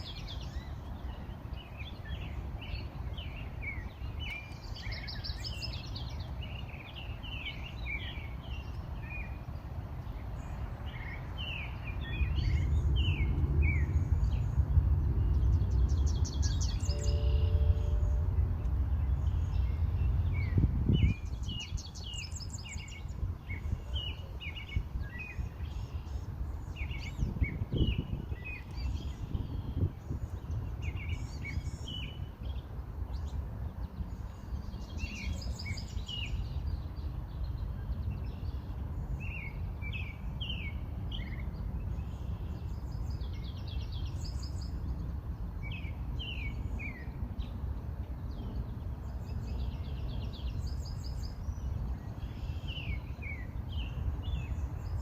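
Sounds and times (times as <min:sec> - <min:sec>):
low outdoor rumble: 0:00.0 - 0:55.0
songbirds chirping and trilling: 0:00.0 - 0:55.0.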